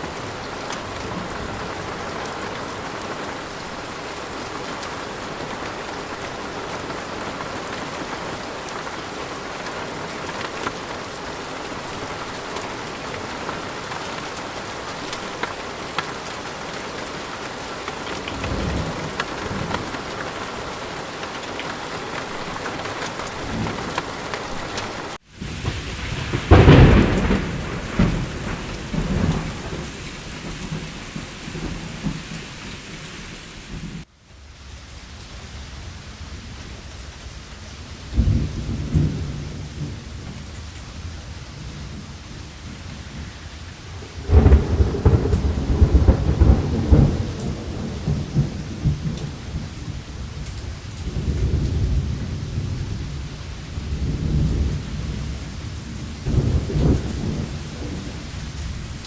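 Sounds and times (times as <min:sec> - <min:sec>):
steady rain: 0:00.0 - 0:59.0
low rumble of thunder: 0:18.0 - 0:32.6, 0:38.0 - 0:59.0
loud thunderclap: 0:18.2 - 0:20.1, 0:22.5 - 0:32.4, 0:44.2 - 0:49.6, 0:56.2 - 0:58.2.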